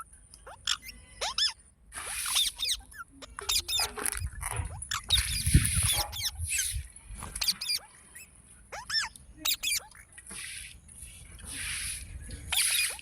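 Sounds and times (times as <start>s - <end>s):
parrot chirping: 0.0s - 6.8s, 7.4s - 10.1s, 12.5s - 13.0s
parrot screeching squawks: 0.4s - 4.0s, 7.4s - 10.0s, 12.5s - 13.0s.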